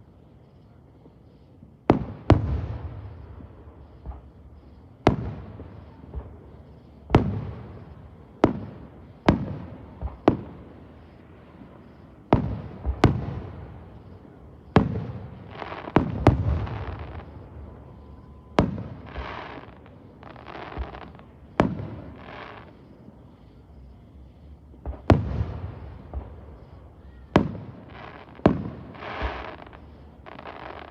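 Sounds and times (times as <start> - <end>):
hissing crackle of fireworks: 0.0 - 30.9
fireworks bangs echoing: 1.8 - 30.9.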